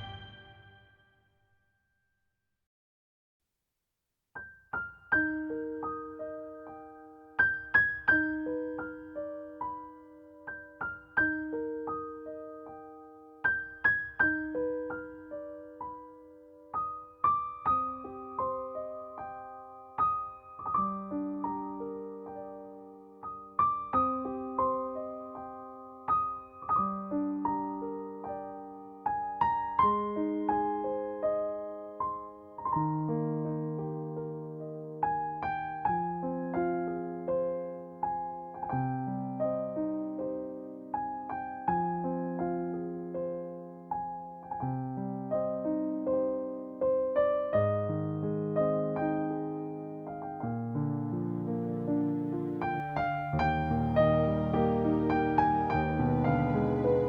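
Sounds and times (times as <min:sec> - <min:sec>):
slow solo piano piece: 0:04.4 - 0:57.0.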